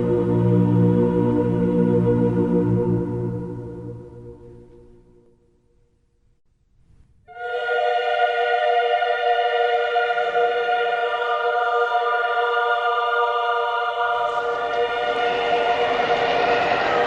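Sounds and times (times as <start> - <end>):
choir holding a chord: 0.0 - 4.9, 7.3 - 17.0
rushing noise: 14.2 - 17.0.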